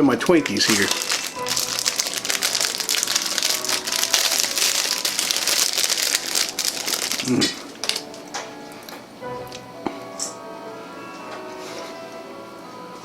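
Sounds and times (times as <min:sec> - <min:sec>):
plastic wrapper crinkling: 0:00.2 - 0:09.0.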